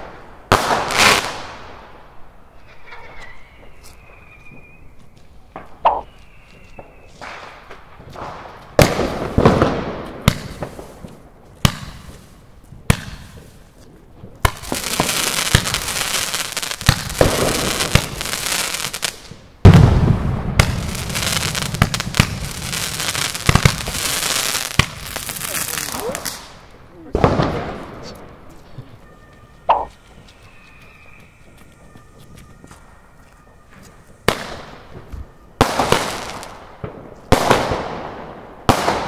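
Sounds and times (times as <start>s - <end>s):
firework bangs: 0.0s - 1.9s, 6.7s - 13.6s, 14.3s - 28.5s, 34.2s - 39.0s
firework whistles: 2.5s - 7.7s, 29.0s - 36.7s
firework crackling: 5.6s - 28.5s.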